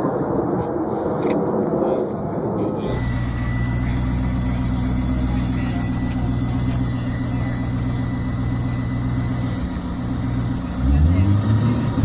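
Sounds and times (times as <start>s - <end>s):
car engine idling: 2.8s - 12.0s.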